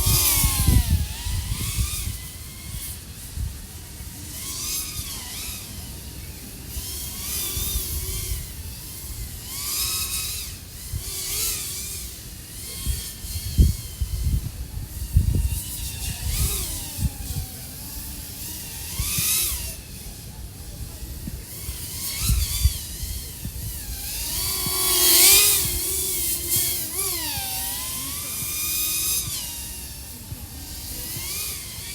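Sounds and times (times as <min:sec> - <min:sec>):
wind buffeting thumps: 0:00.0 - 0:03.7, 0:12.8 - 0:17.7, 0:18.8 - 0:31.9
drone motors whining: 0:00.0 - 0:31.9.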